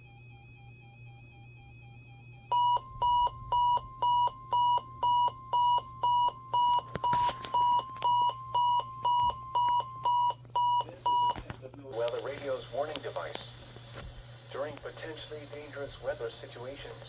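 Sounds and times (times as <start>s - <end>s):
radio alarm beeping: 0.0s - 13.4s.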